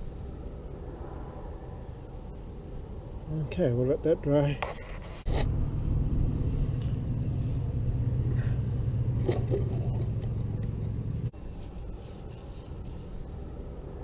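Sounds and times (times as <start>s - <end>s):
faint low rumble: 0.0s - 4.6s, 5.2s - 14.0s
low engine hum: 5.2s - 14.0s.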